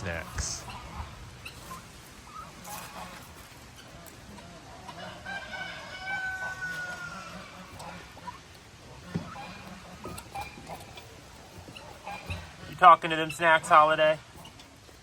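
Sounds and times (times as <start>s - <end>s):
rooster long drawn-out call: 4.9s - 7.8s.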